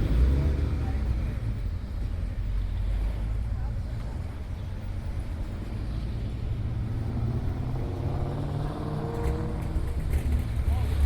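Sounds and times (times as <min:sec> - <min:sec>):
car engine accelerating: 0:06.5 - 0:11.0.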